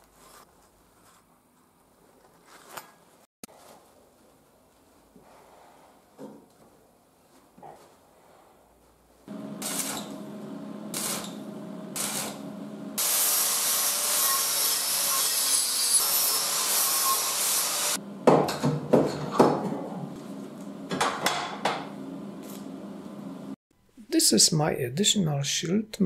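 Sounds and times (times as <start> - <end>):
angle grinder motor humming: 9.3 - 18.0
grinder disc grinding metal: 9.3 - 18.0.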